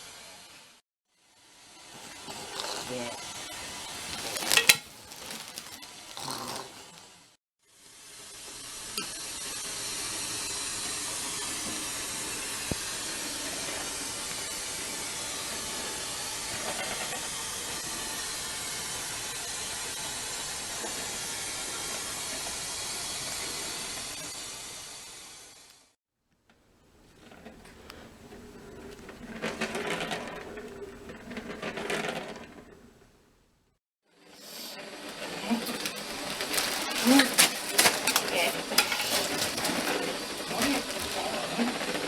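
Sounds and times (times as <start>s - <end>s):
static hiss: 0.0s - 26.0s, 34.3s - 42.0s.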